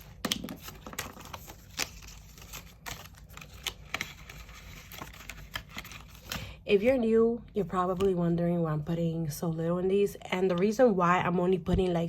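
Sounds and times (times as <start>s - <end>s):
paper rustling: 0.0s - 6.4s.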